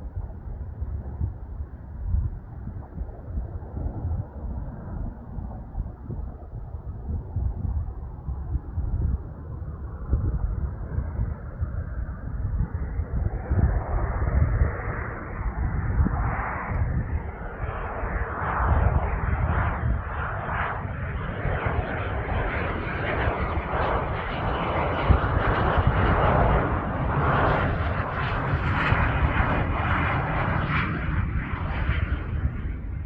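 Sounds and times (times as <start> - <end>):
jet engines running: 14.4 - 33.0.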